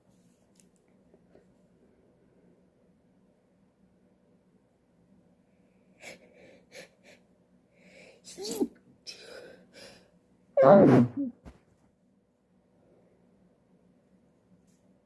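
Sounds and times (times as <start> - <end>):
woman sneezing: 10.6 - 11.4.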